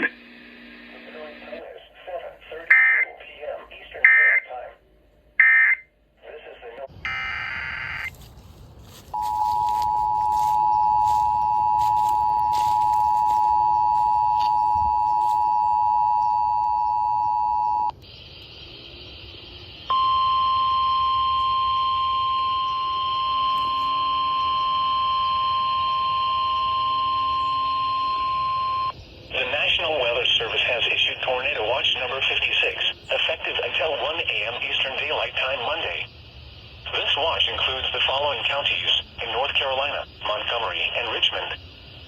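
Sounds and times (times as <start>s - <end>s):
radio hiss: 0.0s - 4.9s, 6.2s - 8.2s, 29.3s - 42.0s
steady warning alarm tone: 7.0s - 8.2s, 9.0s - 41.7s
two-tone alert signal: 9.2s - 17.9s.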